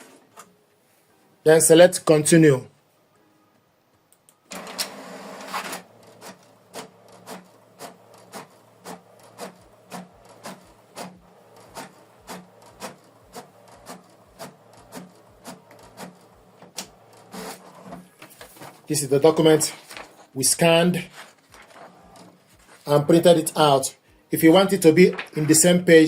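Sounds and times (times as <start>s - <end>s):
inkjet printer pulling in paper: 4.6s - 18.9s, 21.1s - 23.1s.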